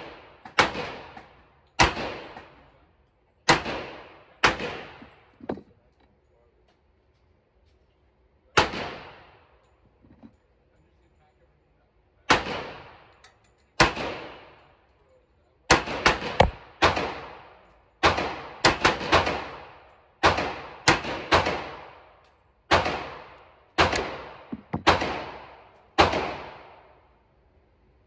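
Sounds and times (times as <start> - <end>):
pistol gunshots with echo: 0.0 - 2.6, 3.5 - 5.3, 8.6 - 9.4, 12.3 - 13.1, 13.8 - 14.6, 15.7 - 27.0.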